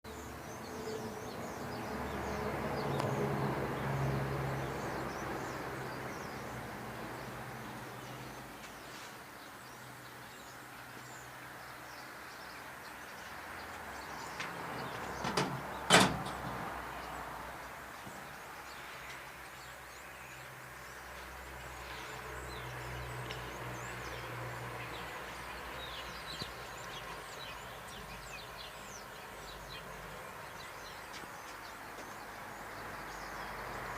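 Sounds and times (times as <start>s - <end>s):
sharp knocks: 15.2s - 16.6s.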